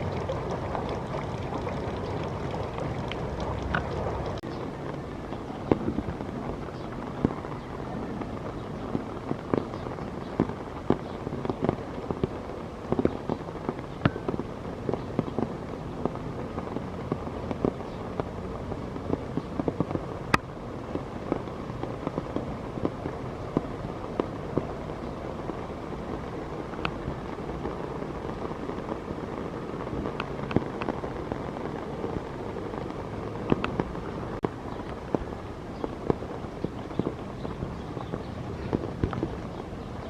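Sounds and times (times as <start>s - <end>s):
raindrops tapping on leaves: 0.0s - 40.0s
steady rainfall: 0.0s - 40.0s.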